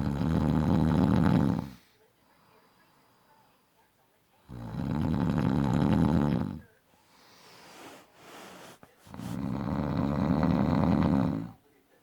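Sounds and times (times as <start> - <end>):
man snoring loudly: 0.0 - 1.7, 4.5 - 6.6, 9.4 - 11.6
breathy exhale: 7.1 - 8.8.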